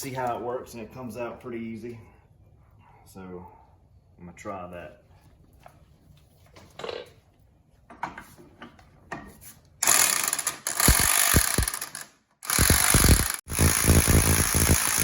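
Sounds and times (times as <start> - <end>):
tool clicks: 9.8 - 13.4
impact wrench hammering: 9.8 - 15.0.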